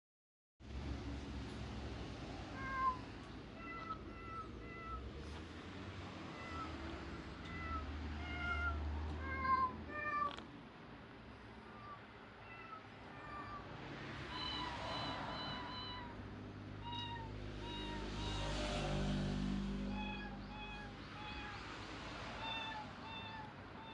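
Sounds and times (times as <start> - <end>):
synthetic meow notes: 14.3 - 16.2, 16.8 - 19.0, 19.8 - 21.6, 22.4 - 23.9.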